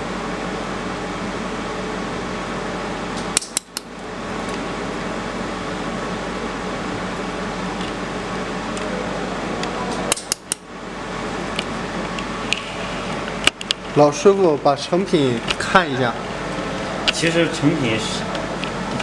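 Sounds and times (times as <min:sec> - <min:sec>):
machine fan hum: 0:00.0 - 0:19.0
sharp metallic clicks: 0:03.4 - 0:03.9, 0:10.1 - 0:10.6.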